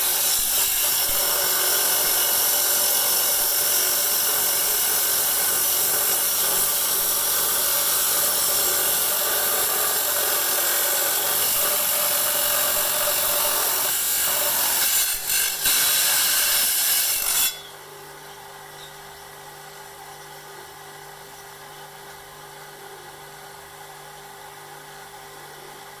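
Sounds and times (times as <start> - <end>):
saw blade grinding rock: 0.0 - 17.8.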